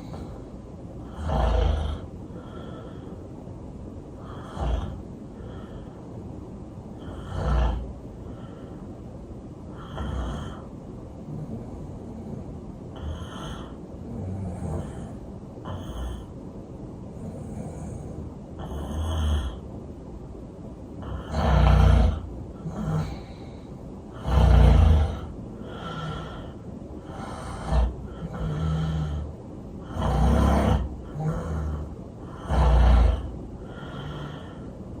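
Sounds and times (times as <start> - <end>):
quiet breaths: 0.0 - 35.0
person snoring loudly: 1.0 - 2.1, 4.2 - 5.0, 7.0 - 7.9, 9.8 - 10.7, 21.0 - 23.4, 24.1 - 34.7.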